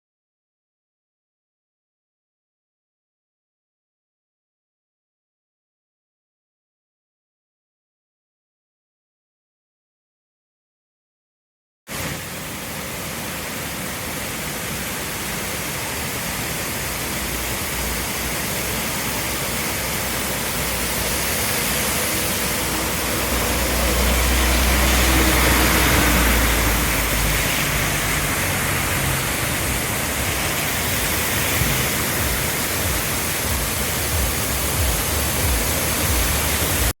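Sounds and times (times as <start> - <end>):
heavy rain pouring: 11.9 - 37.0.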